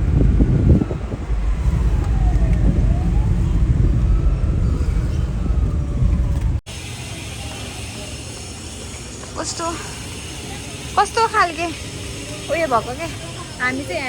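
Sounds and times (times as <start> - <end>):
siren wailing: 0.0 - 6.6
wind on microphone: 0.0 - 6.6
loud street rumble: 0.0 - 14.0.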